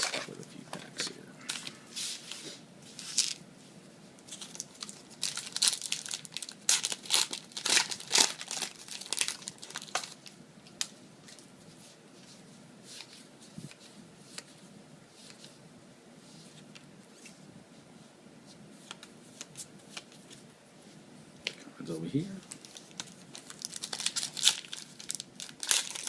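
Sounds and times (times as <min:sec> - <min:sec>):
wrappers crinkling and tearing: 0:00.0 - 0:00.4, 0:04.3 - 0:10.9, 0:22.4 - 0:26.0.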